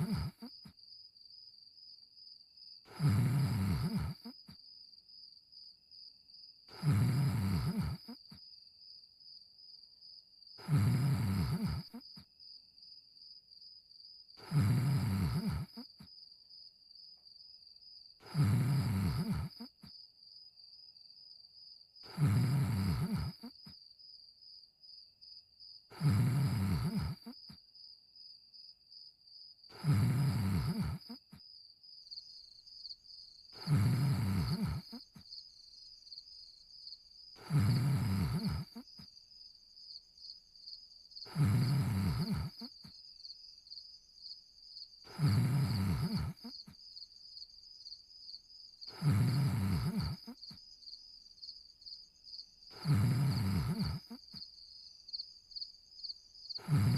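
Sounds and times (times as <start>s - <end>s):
cartoon dog snoring: 0.0s - 0.8s, 2.8s - 4.6s, 6.7s - 8.4s, 10.6s - 12.3s, 14.4s - 16.1s, 18.2s - 20.0s, 22.0s - 23.8s, 25.9s - 27.6s, 29.7s - 31.4s, 33.5s - 35.3s, 37.4s - 39.1s, 41.2s - 42.9s, 45.0s - 46.8s, 48.9s - 50.6s, 52.7s - 54.4s, 56.6s - 56.9s
crickets chirping: 0.0s - 56.9s.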